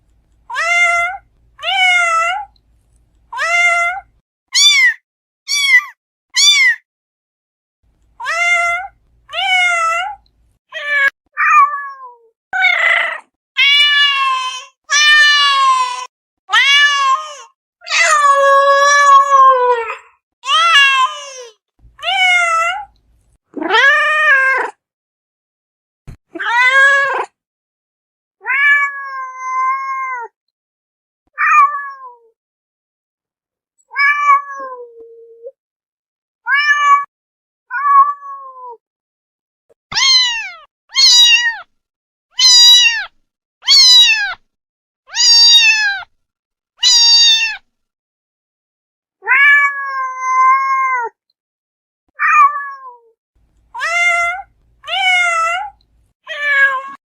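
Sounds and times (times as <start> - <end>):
cats meowing: 3.4 - 6.8, 8.2 - 10.2, 15.4 - 19.7, 28.4 - 30.2, 33.9 - 34.8, 36.5 - 37.1, 39.9 - 41.7, 42.4 - 43.1, 43.7 - 44.4, 45.1 - 46.1, 46.8 - 47.6, 49.2 - 51.2, 52.2 - 53.0, 53.8 - 57.0.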